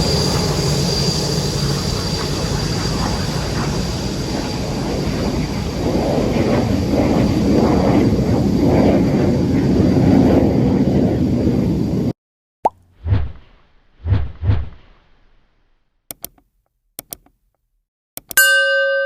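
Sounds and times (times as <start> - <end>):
high engine whine: 0.0 - 12.1
jet airliner engine roar: 0.0 - 12.2.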